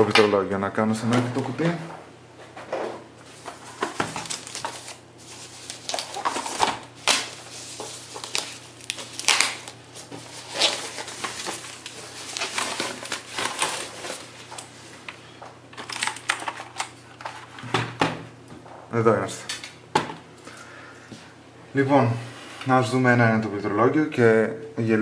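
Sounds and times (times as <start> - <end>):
cardboard and plastic rustling: 2.6 - 15.0.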